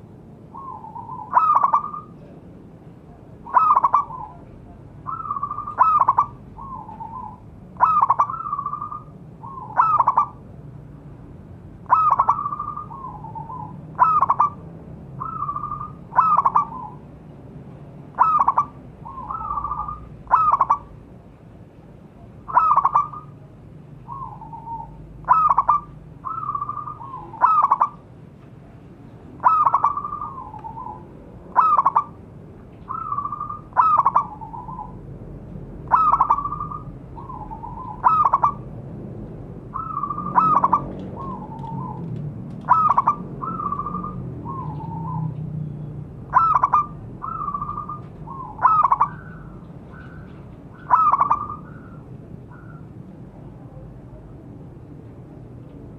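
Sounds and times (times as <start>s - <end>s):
dove cooing: 0.0s - 2.4s, 3.4s - 10.4s, 11.8s - 14.6s, 15.2s - 17.1s, 18.1s - 21.0s, 22.5s - 23.5s, 24.1s - 28.0s, 29.4s - 32.2s, 32.9s - 35.0s, 35.8s - 38.7s, 39.7s - 45.4s, 46.3s - 52.9s.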